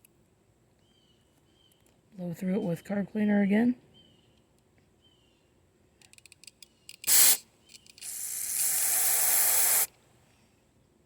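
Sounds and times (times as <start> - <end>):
aerosol spray hissing: 7.1 - 7.4, 8.0 - 9.9.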